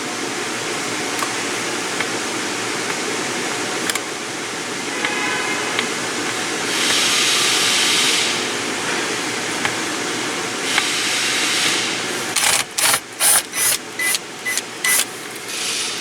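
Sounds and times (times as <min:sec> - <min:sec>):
power driver whirring: 0:09.5 - 0:16.0.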